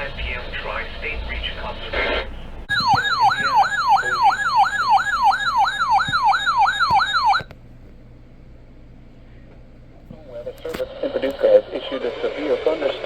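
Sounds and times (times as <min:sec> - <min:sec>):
faint radio hiss: 0:00.0 - 0:02.7, 0:09.2 - 0:13.0
electronic siren alert tone: 0:02.7 - 0:07.5.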